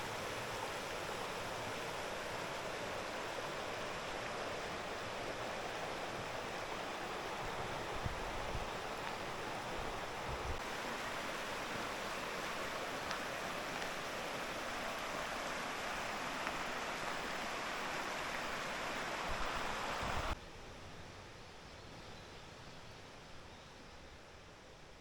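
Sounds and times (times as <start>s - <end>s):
stream rushing: 0.0s - 20.4s.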